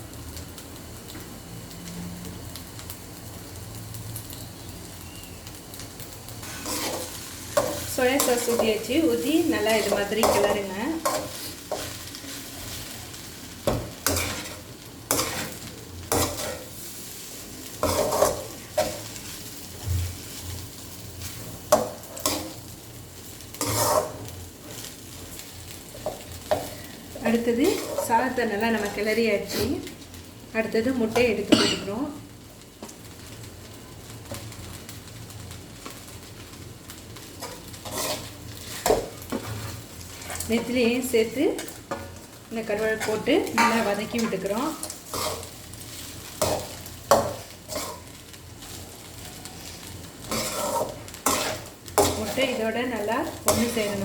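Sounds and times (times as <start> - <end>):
steady sizzle: 0.0 - 54.0
utensil scraping rice in pan: 6.4 - 12.9, 13.7 - 19.6, 21.2 - 22.6, 23.5 - 25.0, 37.3 - 40.8, 42.9 - 48.9, 49.5 - 54.0.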